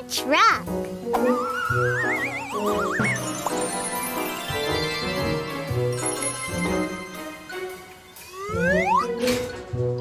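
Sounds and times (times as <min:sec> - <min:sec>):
background music: 0:00.0 - 0:10.0
warbling whistle-like rising tone: 0:08.2 - 0:09.2.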